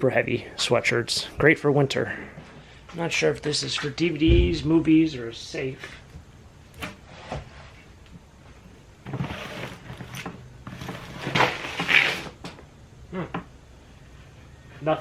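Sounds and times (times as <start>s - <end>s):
rustling and scraping contents: 6.8s - 8.0s, 9.0s - 12.6s.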